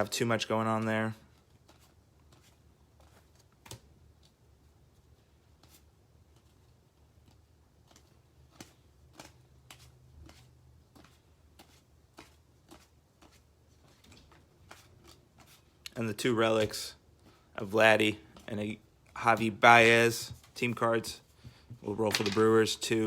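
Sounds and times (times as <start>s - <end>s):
cards ticking and tapping on table: 7.2s - 15.9s, 21.4s - 22.8s.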